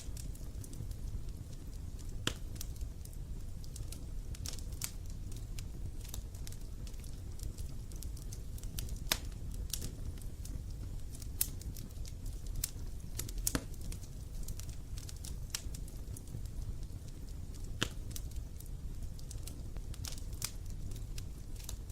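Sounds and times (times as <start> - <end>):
wood fire crackling and popping: 0.0 - 21.9.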